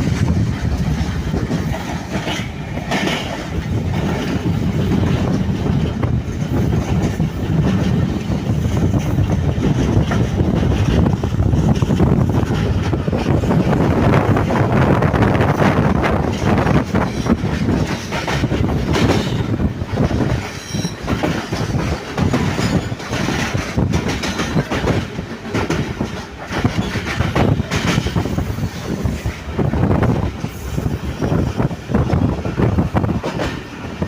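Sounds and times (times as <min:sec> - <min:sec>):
train wheels clattering on track: 0:00.0 - 0:34.0
wheels squealing against rails: 0:16.3 - 0:24.6, 0:26.6 - 0:29.4, 0:30.4 - 0:32.2.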